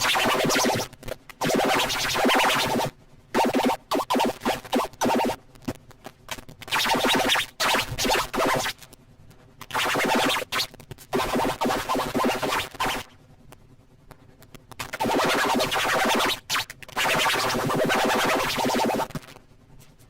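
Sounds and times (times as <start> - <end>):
distorted toy electronic voice: 14.8 - 19.2.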